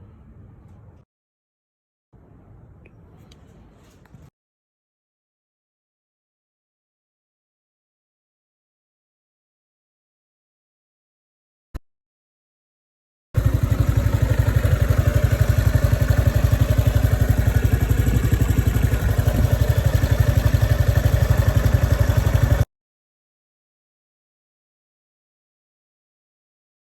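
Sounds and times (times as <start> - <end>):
motorcycle engine idling: 13.4 - 22.7.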